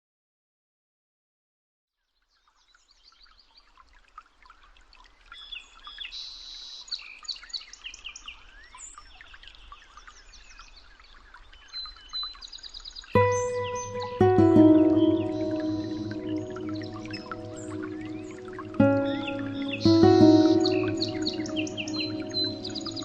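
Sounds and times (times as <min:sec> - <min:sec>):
songbirds chirping and trilling: 0:05.2 - 0:23.0.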